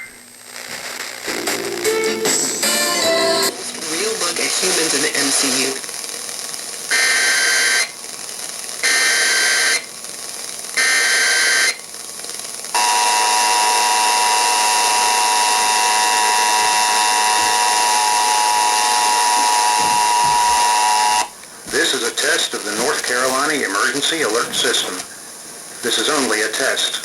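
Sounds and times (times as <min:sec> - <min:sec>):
harsh digital data bursts: 0:06.9 - 0:08.0, 0:12.8 - 0:25.0
two-tone attention signal: 0:12.8 - 0:21.3.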